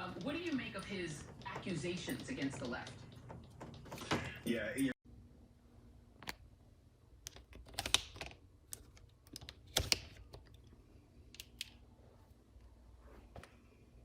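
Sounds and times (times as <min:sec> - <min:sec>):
light clicks and taps: 0:00.0 - 0:04.3.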